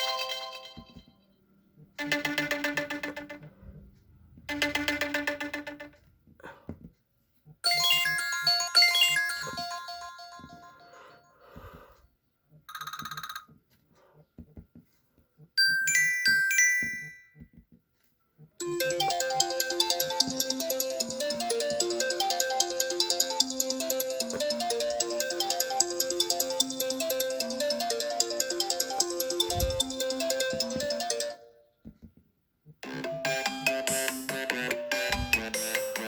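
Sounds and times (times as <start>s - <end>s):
phone ringtone melody: 7.6s - 11.2s, 15.6s - 17.4s, 18.6s - 31.6s
bell-like chime ringtone: 7.6s - 11.4s, 15.6s - 17.4s.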